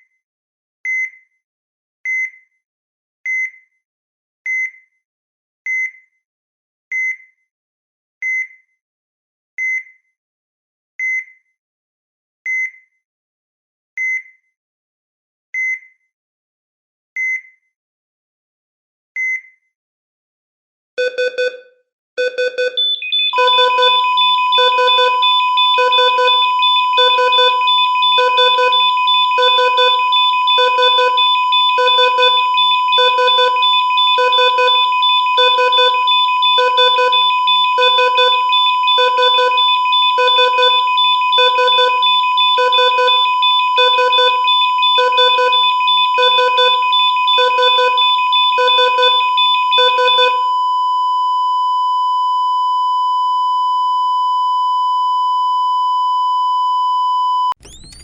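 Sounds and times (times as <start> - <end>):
heart-rate monitor beeping: 21.0 - 21.6, 22.2 - 50.8, 57.5 - 58.0
continuous high alarm tone: 22.2 - 51.0, 57.5 - 58.0.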